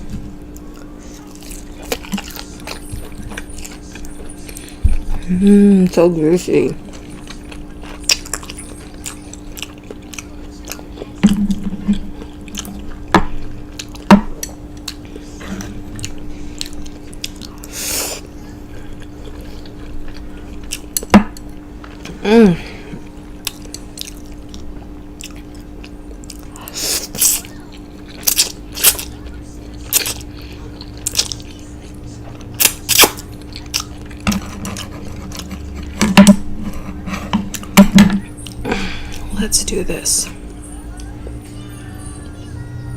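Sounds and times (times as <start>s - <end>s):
close-miked chewing: 0.4s - 5.3s, 6.4s - 22.2s, 23.0s - 39.3s.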